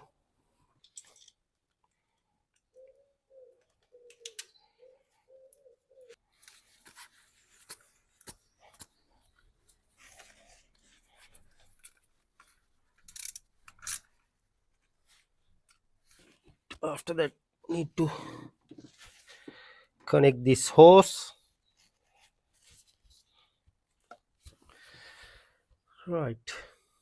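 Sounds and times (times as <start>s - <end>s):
tools and parts clicking: 0.8s - 2.0s, 3.6s - 4.6s, 11.8s - 14.1s.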